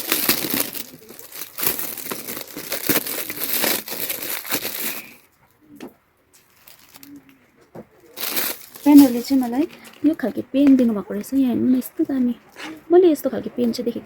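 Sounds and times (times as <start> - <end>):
gift wrapping crinkling and tearing: 0.0 - 5.2, 6.4 - 7.3, 8.0 - 10.9.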